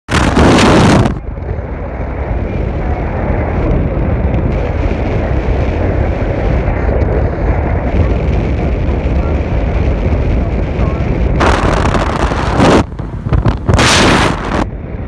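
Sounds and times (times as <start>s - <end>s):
loud burst of noise: 0.1s - 14.7s
car cabin rumble: 8.0s - 14.7s.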